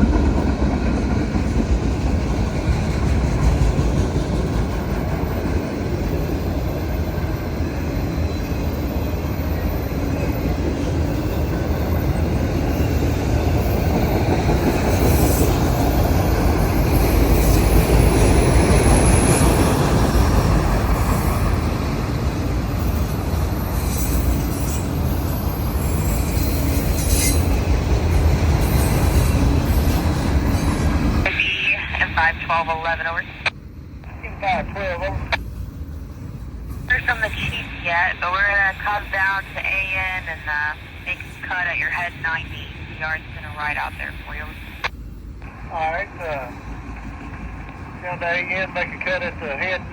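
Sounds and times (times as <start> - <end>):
freight train rumbling past: 0.0 - 49.9
train wheel squeals: 4.8 - 22.0, 22.6 - 31.2.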